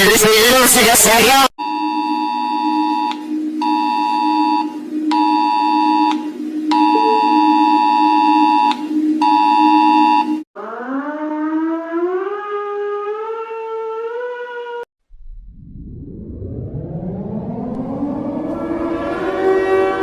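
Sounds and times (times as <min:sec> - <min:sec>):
high alarm beeping: 0:01.6 - 0:10.5
low two-note alarm drone: 0:01.6 - 0:20.0
rising siren tone: 0:01.9 - 0:20.0.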